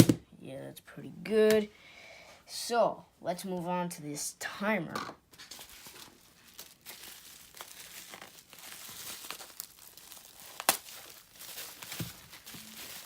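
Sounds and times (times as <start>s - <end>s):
plastic packaging crinkling: 5.4s - 13.0s.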